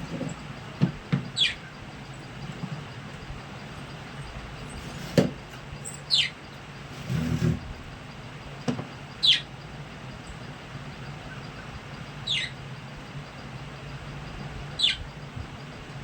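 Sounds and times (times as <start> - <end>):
budgerigar chirping: 1.3 - 4.8, 5.8 - 6.4, 9.2 - 9.5, 11.2 - 12.6, 14.7 - 15.1.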